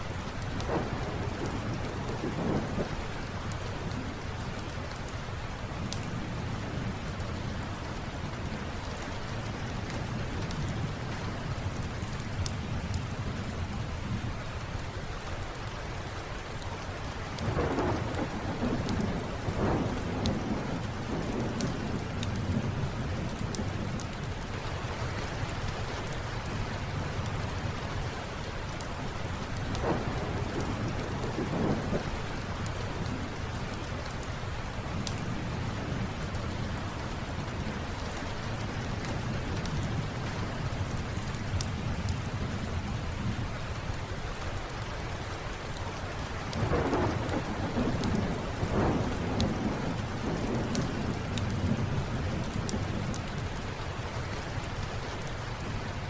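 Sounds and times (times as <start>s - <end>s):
steady rain: 0.0s - 56.0s
thunder rumbling: 0.2s - 4.3s, 17.4s - 24.5s, 29.3s - 34.2s, 46.5s - 53.7s
wood fire crackling: 14.4s - 43.0s, 45.5s - 56.0s.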